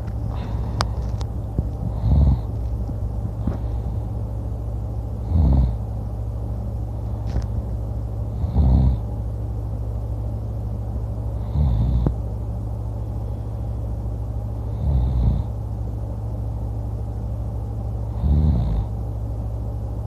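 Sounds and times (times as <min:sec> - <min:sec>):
steady low hum: 0:00.0 - 0:20.0
person snoring loudly: 0:01.9 - 0:02.5, 0:05.2 - 0:05.8, 0:08.3 - 0:09.0, 0:11.4 - 0:12.1, 0:14.7 - 0:15.5, 0:18.1 - 0:18.9.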